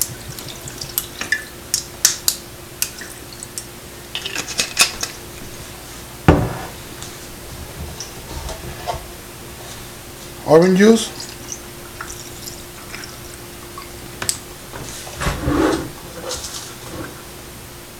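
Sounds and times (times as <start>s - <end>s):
heavy thump: 6.3s - 6.8s
liquid pouring: 11.1s - 14.1s.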